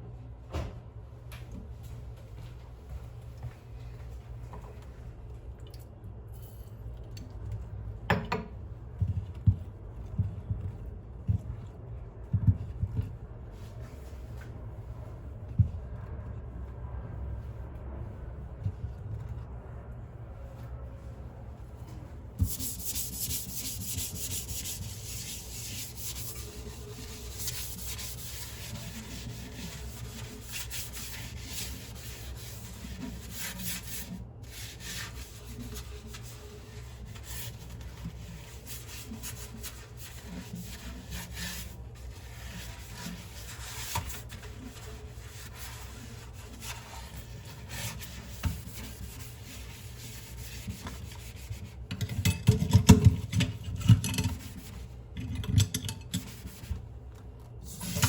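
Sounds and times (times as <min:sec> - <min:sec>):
dishes being scrubbed: 0:22.4 - 0:56.8, 0:57.6 - 0:58.0.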